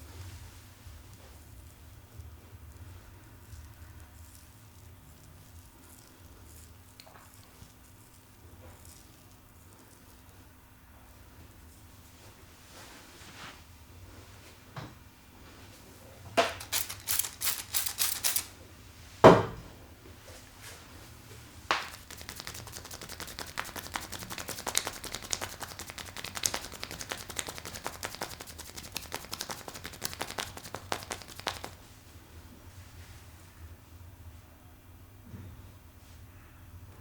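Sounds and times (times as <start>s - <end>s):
hands slapping head: 21.7s - 31.8s
rapid light tapping: 21.7s - 31.8s.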